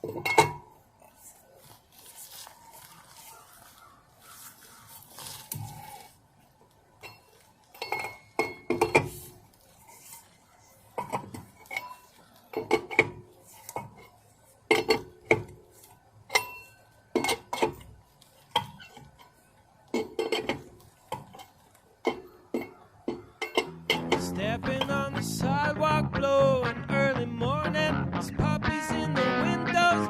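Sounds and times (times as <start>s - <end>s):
hard objects clinking: 7.0s - 15.6s.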